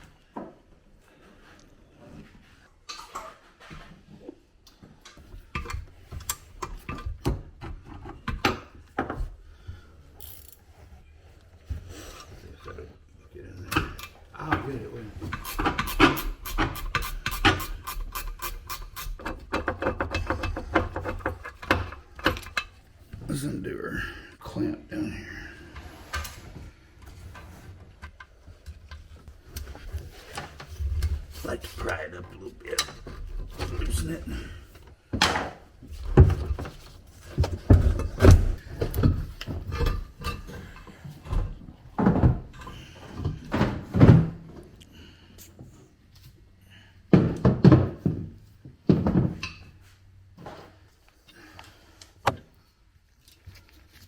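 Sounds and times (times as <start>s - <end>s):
metal clunks and knocks: 19.1s - 22.9s, 47.1s - 49.7s.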